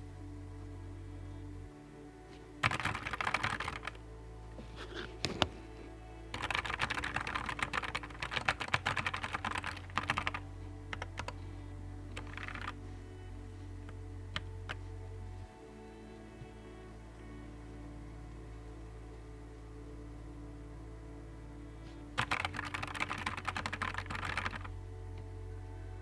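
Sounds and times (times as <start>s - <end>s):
soft background music: 0.0s - 26.0s
mechanical keyboard typing: 2.6s - 4.0s, 6.3s - 11.4s, 12.2s - 12.8s, 22.2s - 24.7s.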